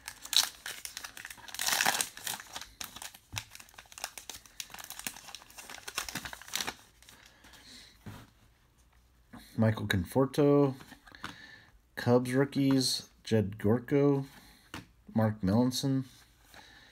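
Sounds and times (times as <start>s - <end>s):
wrapper crinkling as torn open: 0.0s - 7.2s.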